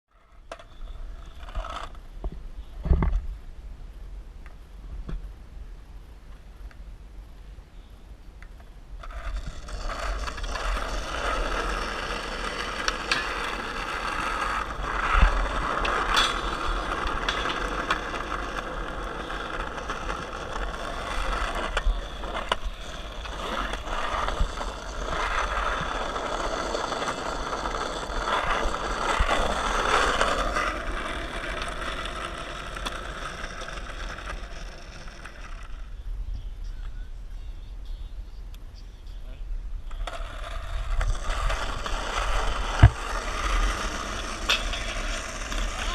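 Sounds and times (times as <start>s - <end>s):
skateboard wheels rolling on pavement: 0.1s - 5.3s, 8.4s - 36.2s, 39.7s - 45.9s
skateboard clacks: 8.4s - 35.9s, 39.9s - 45.9s.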